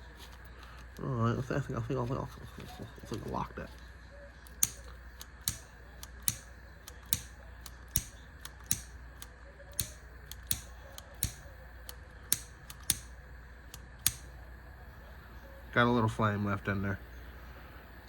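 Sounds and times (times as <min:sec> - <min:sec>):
lighter igniter clicks: 0:04.4 - 0:14.5.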